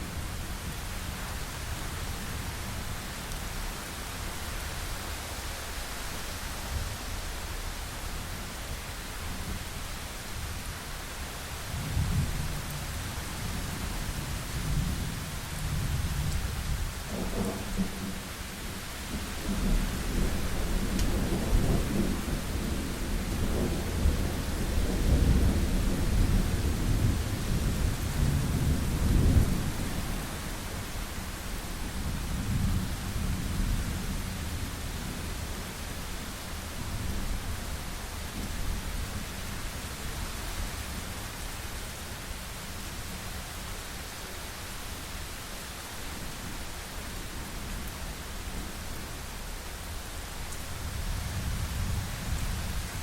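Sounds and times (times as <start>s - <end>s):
steady rain hiss: 0.0s - 53.0s
rolling thunder: 19.1s - 30.9s.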